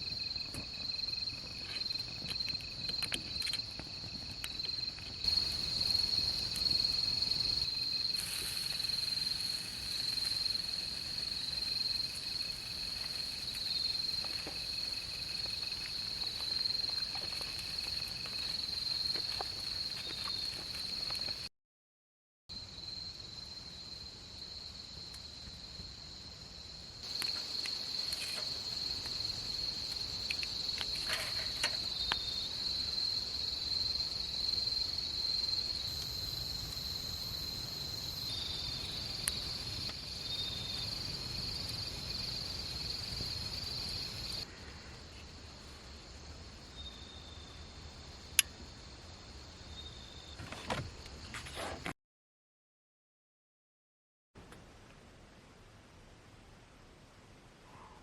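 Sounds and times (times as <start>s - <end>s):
insects trilling: 0.0s - 21.5s, 22.5s - 51.3s
lower insect trill: 0.0s - 21.5s, 22.5s - 51.3s
small ticks and crackles: 0.0s - 21.5s, 27.0s - 45.3s.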